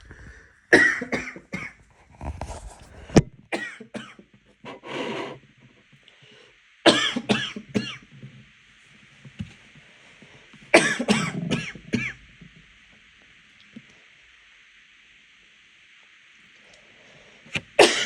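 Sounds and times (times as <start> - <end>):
person coughing hard: 0.7 - 1.8, 3.6 - 4.2, 6.9 - 8.0, 10.8 - 12.2, 17.8 - 18.0
rasping breath: 4.7 - 5.4.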